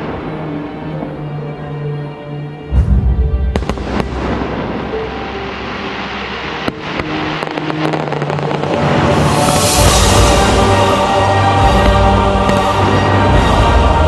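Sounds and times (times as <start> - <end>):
recorded music: 0.0 - 14.0
fireworks booming: 2.7 - 13.7
fireworks cracking: 3.5 - 13.7.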